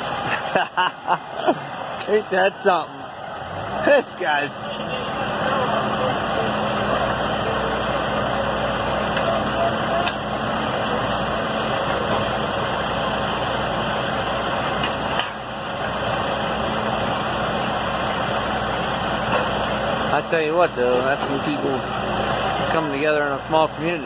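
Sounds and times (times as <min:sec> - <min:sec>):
faint voices: 0:00.0 - 0:12.9
heavy vehicle engine running: 0:00.0 - 0:24.0
outdoor background noise: 0:00.0 - 0:24.0.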